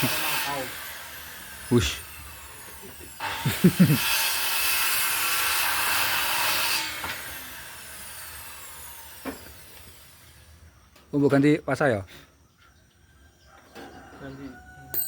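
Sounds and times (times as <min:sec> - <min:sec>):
electric planer cutting wood: 0:00.0 - 0:10.0.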